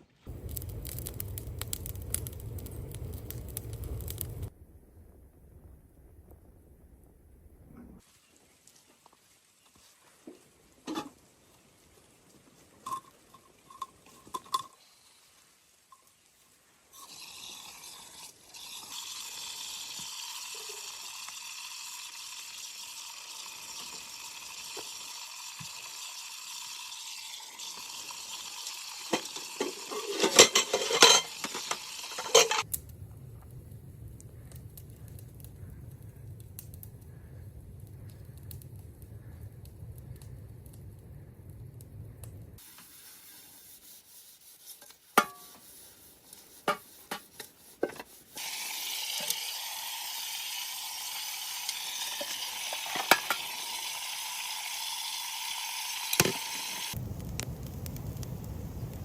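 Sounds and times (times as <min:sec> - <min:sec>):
steady hiss: 0:00.2 - 0:04.5, 0:14.1 - 0:59.0
low steady hum: 0:32.3 - 0:42.6.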